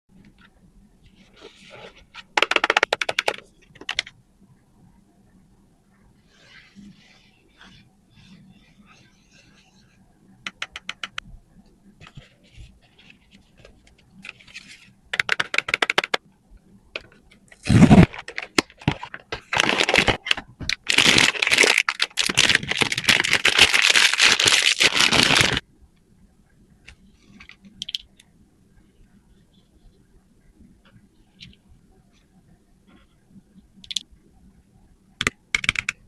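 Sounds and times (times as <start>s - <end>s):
packaging clicks and taps: 1.9s - 4.1s, 13.6s - 16.2s, 17.0s - 25.6s, 35.2s - 36.0s
packaging tearing and crinkling: 17.5s - 25.6s.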